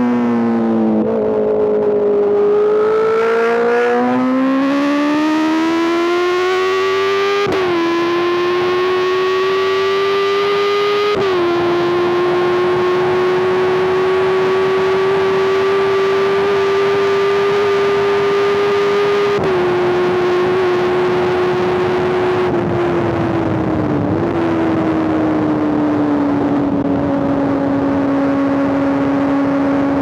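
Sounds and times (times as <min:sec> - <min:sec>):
motorcycle engine at high revs: 0:00.0 - 0:30.0.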